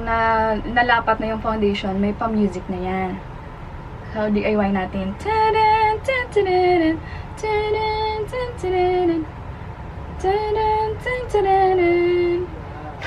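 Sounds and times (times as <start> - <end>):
woman singing: 4.2 - 9.3, 10.2 - 12.6.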